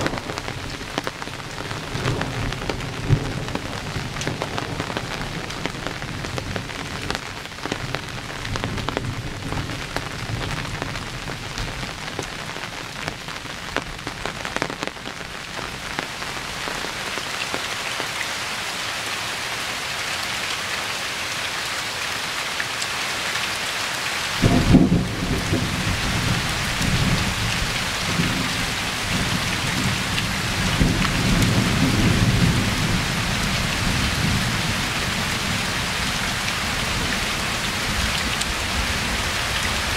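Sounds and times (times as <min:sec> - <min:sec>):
thunder rumbling: 0:00.0 - 0:17.1, 0:24.4 - 0:39.9
steady rain hissing: 0:00.0 - 0:39.9
loud thunder crack: 0:24.4 - 0:27.4.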